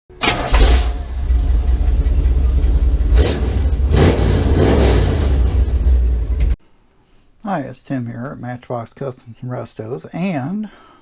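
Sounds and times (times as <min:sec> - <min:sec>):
car engine rumbling and revving: 0:00.2 - 0:06.6.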